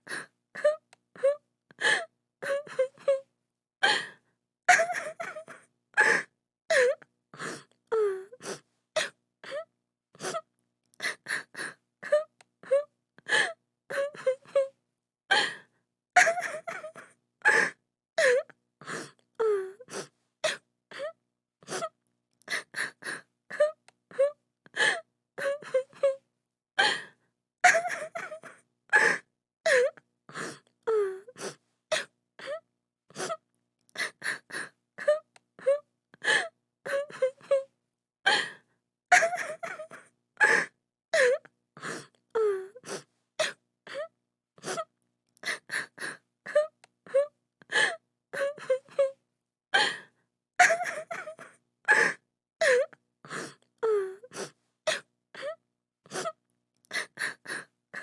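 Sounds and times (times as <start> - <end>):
woman sobbing: 4.7 - 7.0, 16.2 - 18.4, 27.6 - 30.0, 39.1 - 41.4, 50.6 - 52.9.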